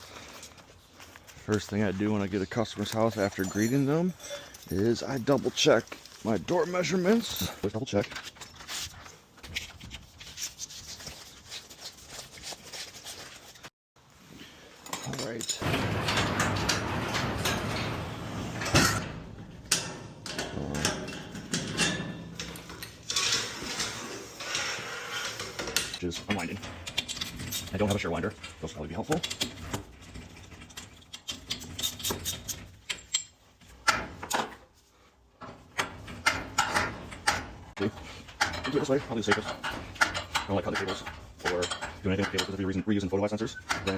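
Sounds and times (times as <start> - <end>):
rubbing and scraping handling noise: 0.0 - 43.9
metal clicks and knocks: 14.8 - 23.4, 25.6 - 34.6, 35.4 - 42.8.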